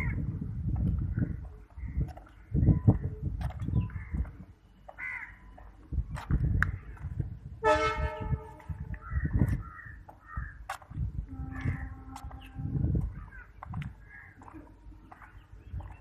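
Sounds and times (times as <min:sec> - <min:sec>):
crows cawing: 0:04.9 - 0:05.6, 0:09.0 - 0:10.6, 0:13.1 - 0:14.6.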